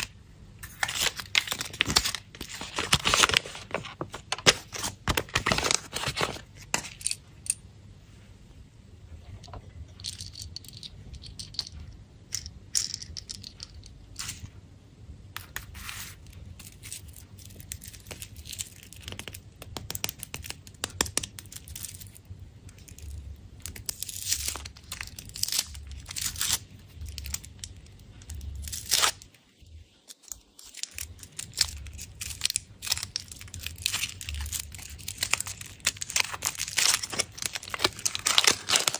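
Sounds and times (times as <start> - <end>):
foil wrappers crinkling and tearing: 0.0 - 6.5, 16.6 - 22.1, 22.8 - 29.3, 30.0 - 38.9.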